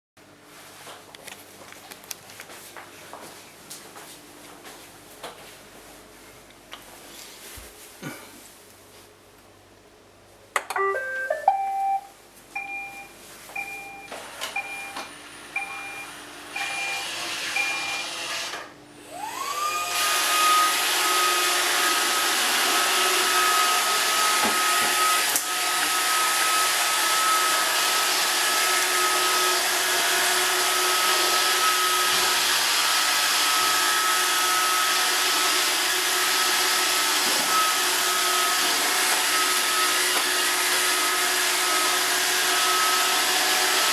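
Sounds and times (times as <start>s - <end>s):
short electronic chime: 10.8s - 12.1s
robot vacuum motor whine: 15.3s - 43.9s.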